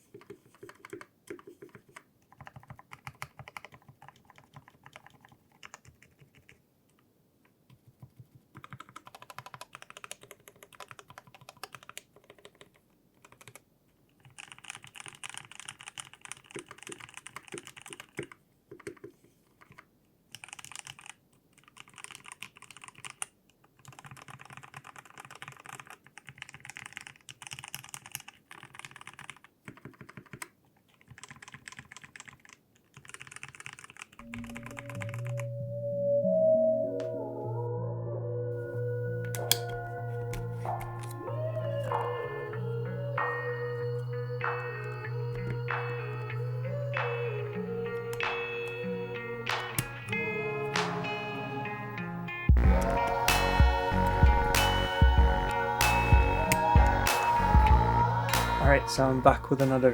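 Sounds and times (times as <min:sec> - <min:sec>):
mechanical keyboard typing: 0:00.0 - 0:06.6, 0:07.7 - 0:35.5, 0:49.5 - 0:50.2.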